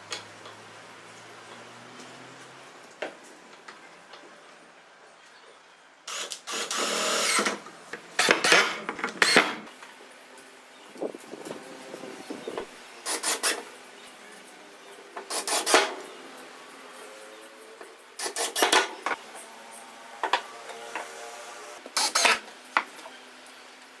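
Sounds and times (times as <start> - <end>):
wood being rasped: 13.1 - 13.6.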